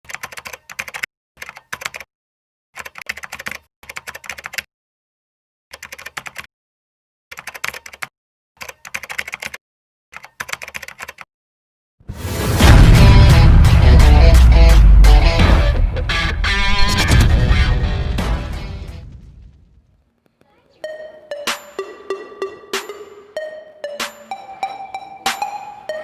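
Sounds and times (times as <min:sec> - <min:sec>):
keyboard typing: 0:00.1 - 0:02.1, 0:02.8 - 0:04.7, 0:05.7 - 0:06.5, 0:07.3 - 0:11.3.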